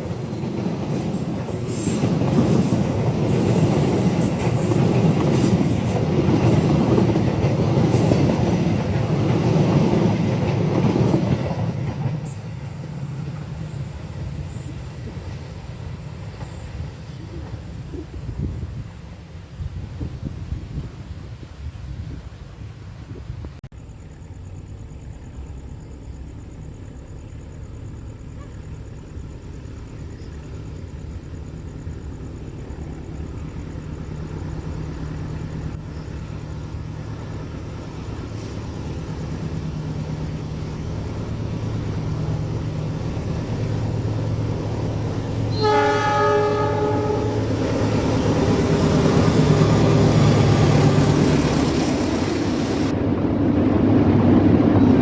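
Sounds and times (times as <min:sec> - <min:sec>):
train wheel and rail noise: 0:00.0 - 0:55.0
locomotive engine hum: 0:20.7 - 0:55.0
train horn blast: 0:45.5 - 0:47.6.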